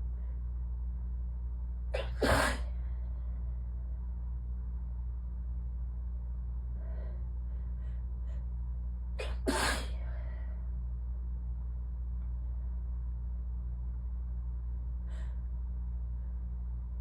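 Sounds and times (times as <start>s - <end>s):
steady low hum: 0.0s - 17.0s
person sneezing: 2.0s - 2.7s, 9.2s - 10.1s.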